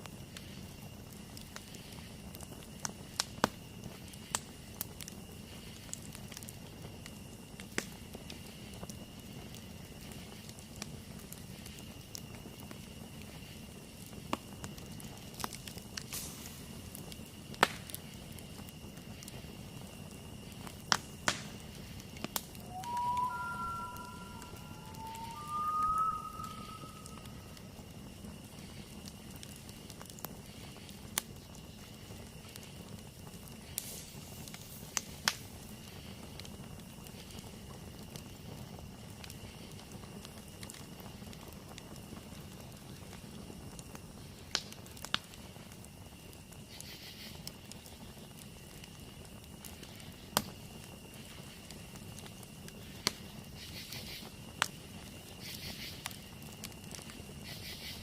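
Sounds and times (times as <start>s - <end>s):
campfire crackling: 0.0s - 58.0s
insects trilling: 0.1s - 58.0s
pulsing insect calls: 21.7s - 28.9s, 57.1s - 58.0s.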